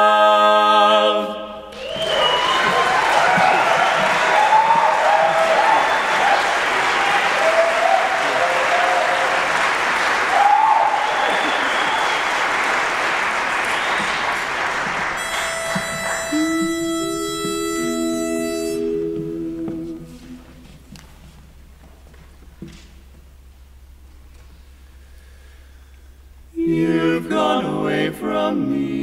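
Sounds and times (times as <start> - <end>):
vocal quartet humming: 0.0 - 2.0, 15.2 - 21.0, 26.4 - 29.0
cheers: 1.7 - 15.5
audience applauding: 1.7 - 18.1
pitch pipe note: 15.2 - 20.8.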